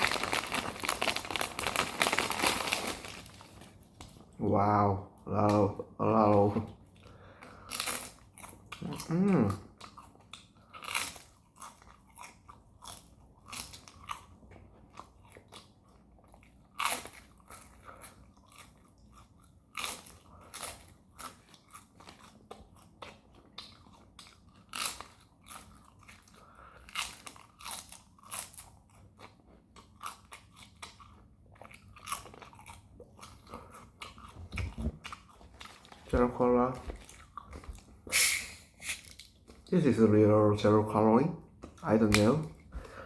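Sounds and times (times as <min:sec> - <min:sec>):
crunchy snack chewing: 0:00.0 - 0:03.8, 0:07.4 - 0:36.2.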